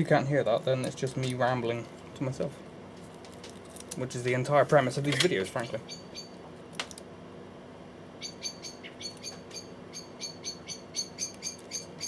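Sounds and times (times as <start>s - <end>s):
blackbird chirping: 5.8s - 6.4s, 8.2s - 12.0s.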